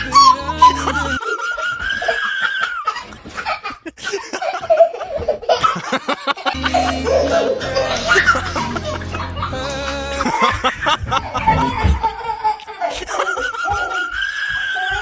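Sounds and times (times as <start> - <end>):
people laughing: 0.0 - 2.6, 3.5 - 14.2
background music: 6.6 - 10.8.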